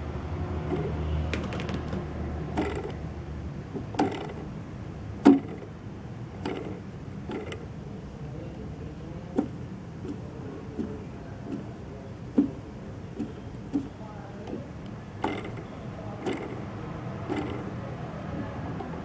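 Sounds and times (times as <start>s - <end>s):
sharp knocks from motor bearings: 0.6s - 3.1s, 3.7s - 4.6s, 5.2s - 7.8s, 9.3s - 17.8s
electric motor humming: 12.4s - 19.0s.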